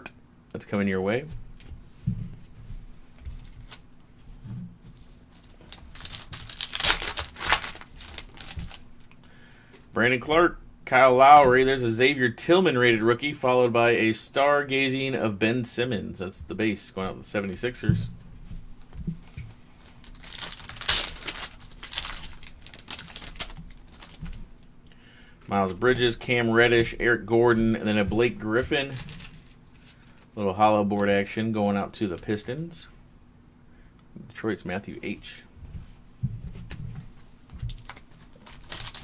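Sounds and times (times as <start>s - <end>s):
wrapper tearing and crinkling: 5.4s - 8.9s, 19.8s - 24.4s, 28.9s - 29.4s, 37.7s - 39.0s.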